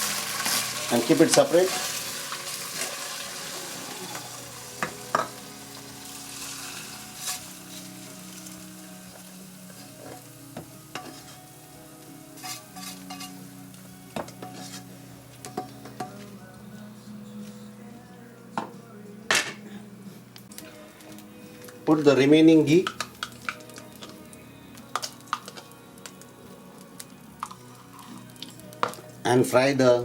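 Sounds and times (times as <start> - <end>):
chicken sizzling in a pan: 0.0 - 15.2.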